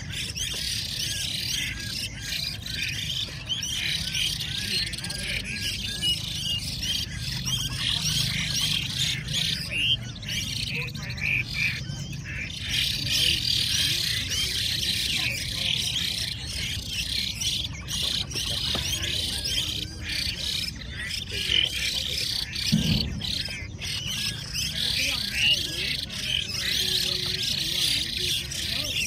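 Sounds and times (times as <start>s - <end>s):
caged birds singing in chorus: 0.0s - 29.0s
low background murmur: 0.0s - 29.0s.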